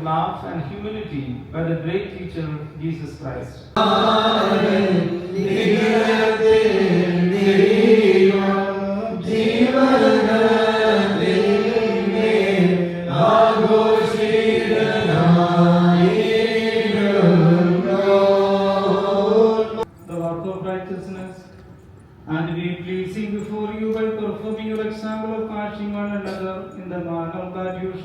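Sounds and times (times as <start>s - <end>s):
liturgical chant: 3.7s - 19.9s.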